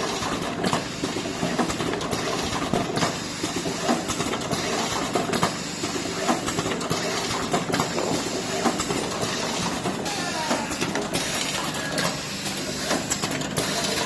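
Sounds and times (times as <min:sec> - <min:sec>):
packaging machine clattering: 0:00.0 - 0:14.0.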